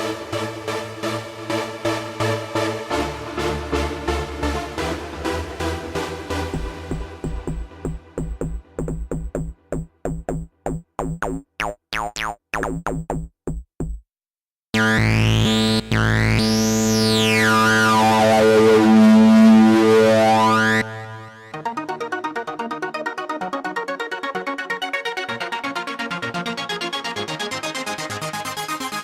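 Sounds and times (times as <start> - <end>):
rhythmic synth pattern: 6.5 - 14.0
plucked synth notes: 6.6 - 14.0, 14.8 - 21.5
sustained synth chord with sweep: 14.8 - 21.8.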